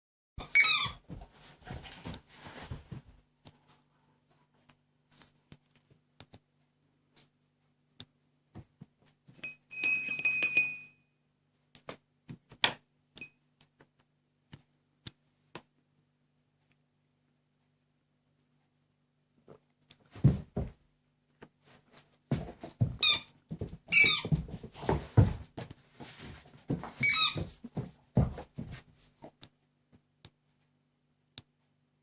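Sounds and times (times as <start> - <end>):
squeaky toy high squeak: 0.4 - 1.0, 23.0 - 23.3, 23.9 - 24.3, 27.0 - 27.5.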